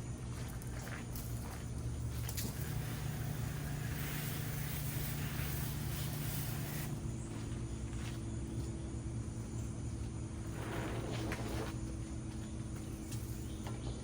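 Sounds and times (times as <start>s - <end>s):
pump humming: 0.0s - 14.0s
water spray hissing: 2.3s - 7.0s.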